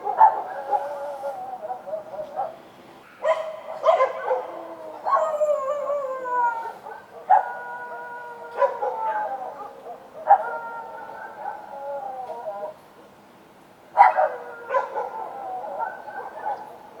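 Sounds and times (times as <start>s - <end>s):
dog barking: 0.0s - 2.6s, 3.2s - 5.3s, 6.8s - 7.6s, 8.5s - 11.7s, 14.0s - 17.0s
dogs howling: 0.0s - 2.6s, 3.2s - 12.8s, 14.0s - 17.0s.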